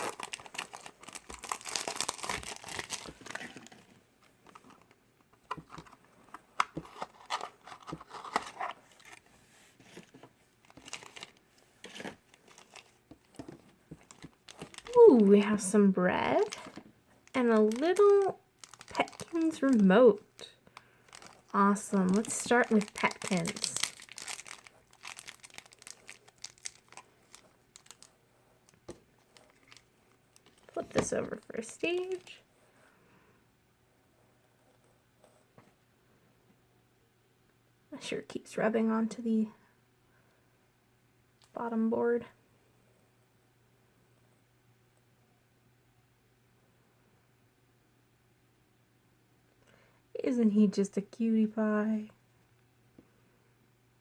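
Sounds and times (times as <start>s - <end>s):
plastic packaging crinkling and tearing: 0.0s - 3.9s, 6.6s - 9.3s, 10.0s - 15.6s, 16.3s - 32.4s.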